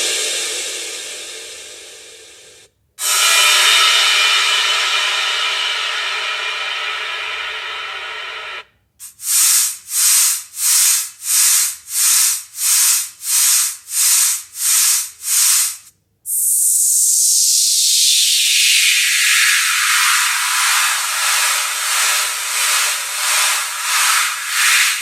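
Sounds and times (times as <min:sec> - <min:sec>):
steady loud hiss: 0:00.0 - 0:25.0
hissing puffs: 0:09.0 - 0:25.0.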